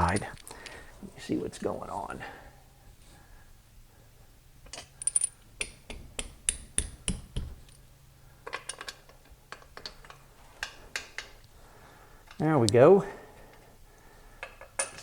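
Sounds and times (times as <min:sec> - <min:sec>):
metal bolts clicking: 0:00.0 - 0:00.5, 0:08.4 - 0:11.5, 0:14.4 - 0:15.0.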